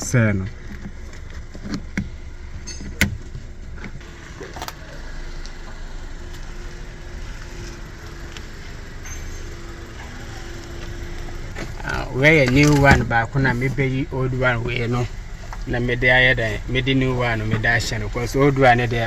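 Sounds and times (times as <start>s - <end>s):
faint steady hum: 0.0s - 19.0s
metal parts clinking: 9.0s - 9.9s.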